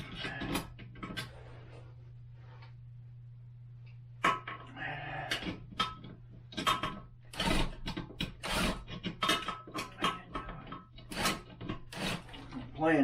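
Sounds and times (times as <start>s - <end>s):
clicks and clinks of hard parts: 5.3s - 12.8s.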